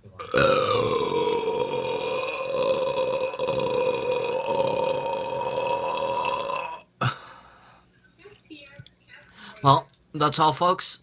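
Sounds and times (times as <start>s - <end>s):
man belching: 0.2s - 7.2s.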